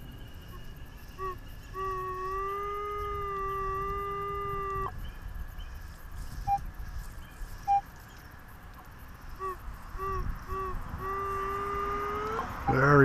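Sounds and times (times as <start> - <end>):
metal detector tone: 9.4 - 13.0.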